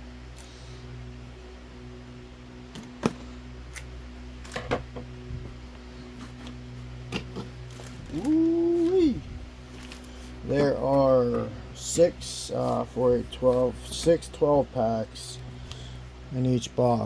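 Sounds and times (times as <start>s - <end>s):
low hum: 0.0s - 17.0s
person humming: 8.0s - 9.4s.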